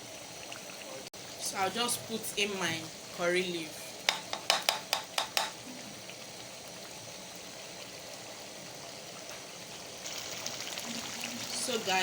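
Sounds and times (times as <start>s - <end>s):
stew simmering and sizzling: 0.0s - 12.0s.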